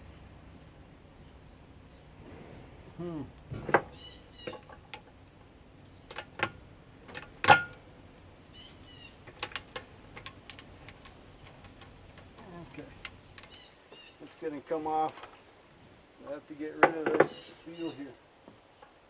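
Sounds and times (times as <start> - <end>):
tools and parts clicking and knocking: 3.6 - 5.5, 6.1 - 7.8, 9.2 - 13.6.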